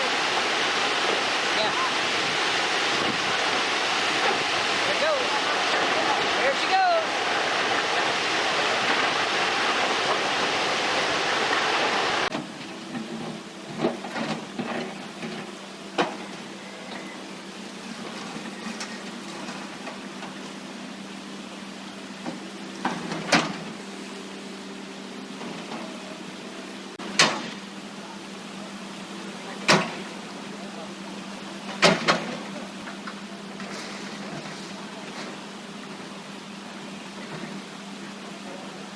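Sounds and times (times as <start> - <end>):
excavator engine running: 0.0 - 38.9
water rushing through dam: 0.0 - 38.9
sharp metal knocks and clanks: 27.0 - 27.6.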